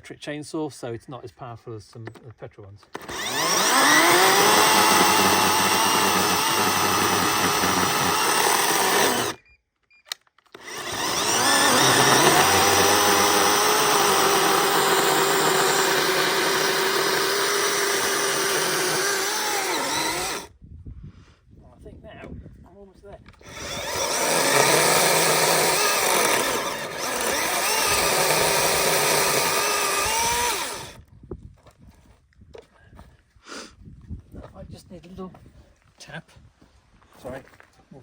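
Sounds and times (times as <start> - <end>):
electric chainsaw cutting wood: 2.9 - 9.4, 10.5 - 20.5, 23.4 - 31.0.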